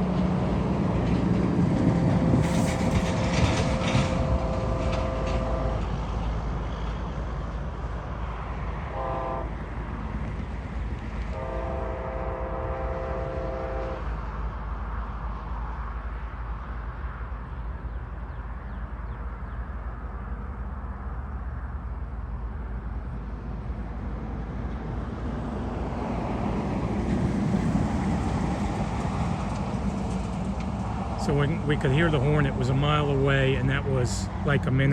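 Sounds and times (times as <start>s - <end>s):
low train rumble: 0.0s - 34.9s
distant locomotive horn: 3.4s - 6.2s, 8.8s - 9.8s, 11.3s - 14.3s.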